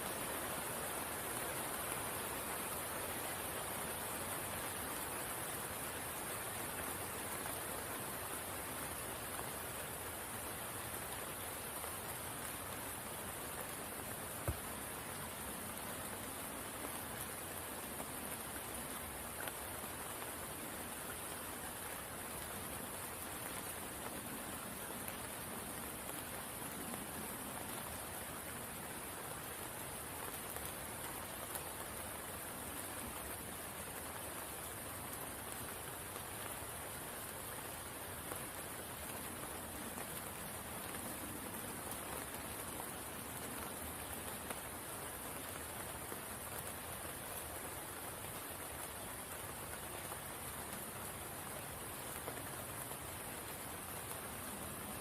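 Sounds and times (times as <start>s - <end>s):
rain falling on water: 0.0s - 55.0s.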